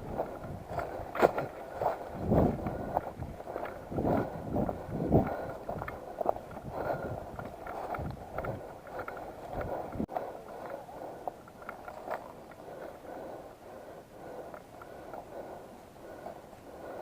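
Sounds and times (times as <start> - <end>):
footsteps: 0.0 - 12.6
rustling of clothing and vegetation: 0.0 - 17.0.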